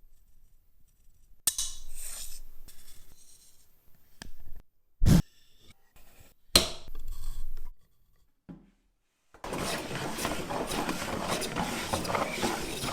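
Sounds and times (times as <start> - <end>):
plane iron scraping on sharpening stone: 9.4 - 12.9.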